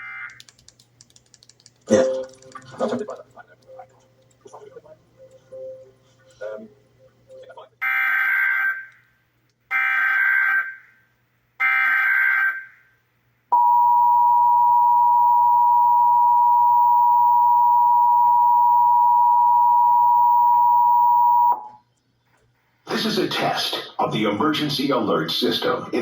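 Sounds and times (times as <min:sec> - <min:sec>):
steady two-tone attention signal: 0:05.2 - 0:06.0, 0:13.6 - 0:21.7.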